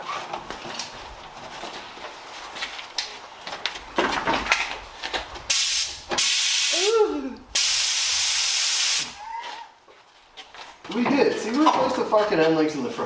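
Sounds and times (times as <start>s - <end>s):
loud hissing spray: 5.5s - 7.0s, 7.6s - 9.2s.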